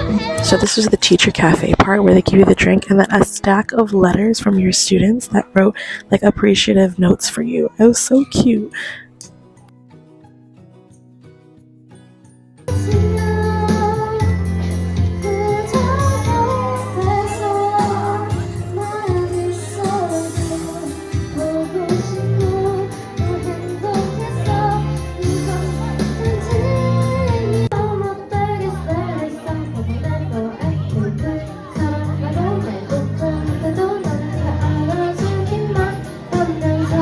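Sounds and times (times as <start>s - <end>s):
recorded backing track: 0.0s - 37.0s
students singing pop song: 12.8s - 37.0s.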